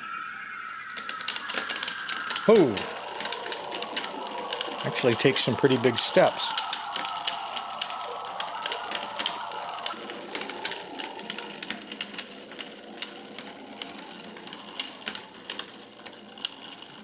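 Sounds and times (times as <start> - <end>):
clockwork gears whirring: 0.0 - 17.0.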